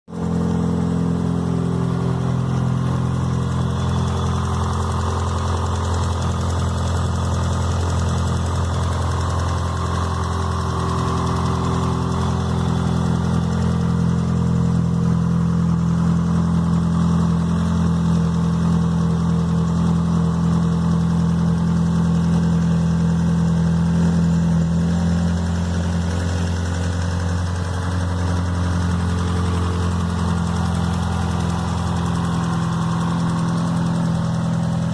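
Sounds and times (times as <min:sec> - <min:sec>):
car engine idling: 0:00.1 - 0:34.9.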